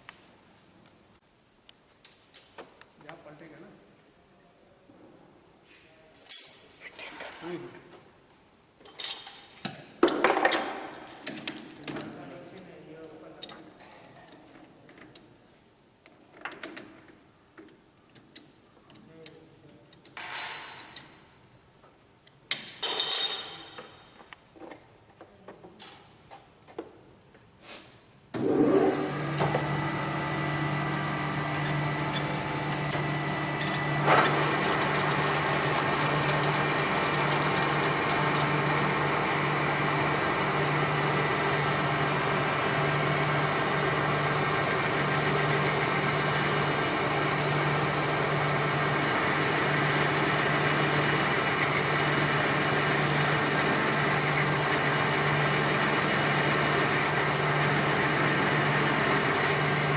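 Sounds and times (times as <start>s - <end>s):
machine motor humming: 28.4s - 59.9s.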